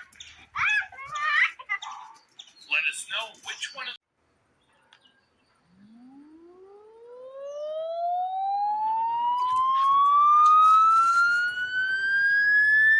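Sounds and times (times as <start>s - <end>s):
siren winding up: 5.7s - 12.9s.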